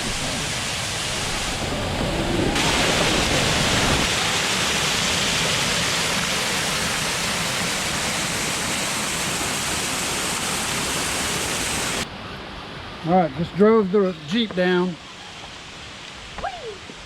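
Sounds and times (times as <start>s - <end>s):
water rushing: 0.0s - 12.1s.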